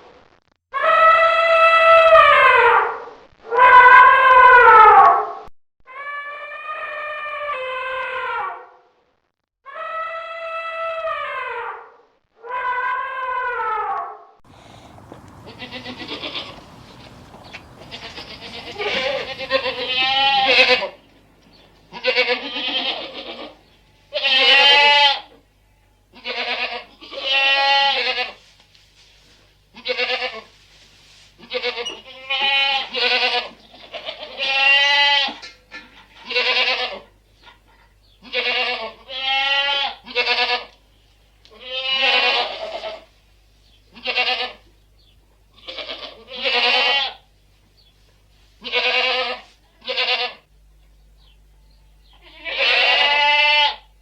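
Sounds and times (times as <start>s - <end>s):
livestock bleating: 14.5s - 21.1s, 21.9s - 28.5s, 29.7s - 30.6s, 31.4s - 37.2s, 38.2s - 40.8s, 41.5s - 43.2s, 43.9s - 44.7s, 45.5s - 47.3s, 48.6s - 50.5s, 51.6s - 54.0s.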